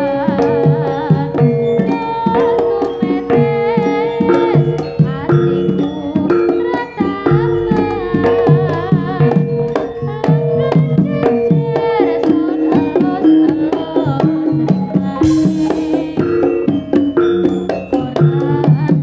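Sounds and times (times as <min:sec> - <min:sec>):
ringing metal percussion: 0:00.0 - 0:11.8, 0:12.4 - 0:19.0
cymbal crash: 0:15.2 - 0:17.0
gamelan music: 0:15.2 - 0:18.4
fast hand drumming: 0:15.2 - 0:18.6.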